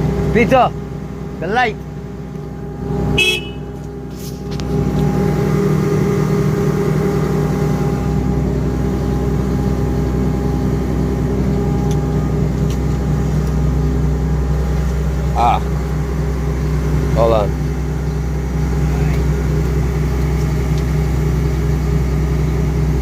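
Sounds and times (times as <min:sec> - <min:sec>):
engine running: 0:00.0 - 0:23.0.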